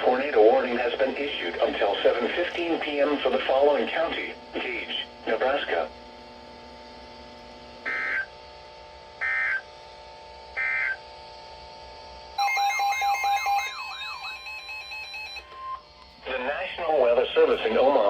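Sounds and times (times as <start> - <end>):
faint steady hum: 0.0 - 18.0
data bursts from radio: 7.9 - 8.3
warbling electronic beeping tones: 7.9 - 8.3, 12.4 - 15.8.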